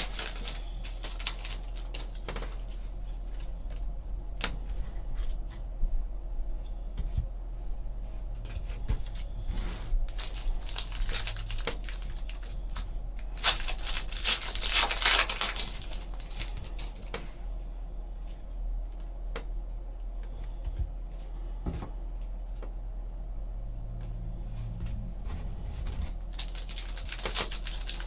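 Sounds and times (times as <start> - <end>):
wrappers tearing and crinkling: 0.0 - 2.9, 10.1 - 17.2, 25.8 - 28.0.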